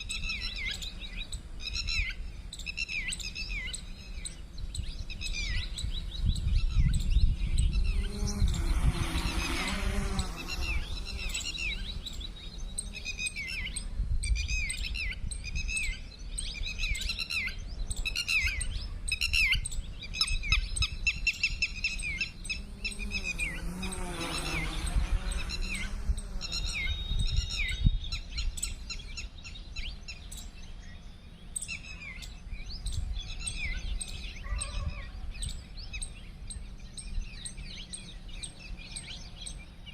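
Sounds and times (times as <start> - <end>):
small birds chirping: 0.0 - 39.9
wind rumble on microphone: 0.0 - 39.9
motor hum: 7.8 - 13.6.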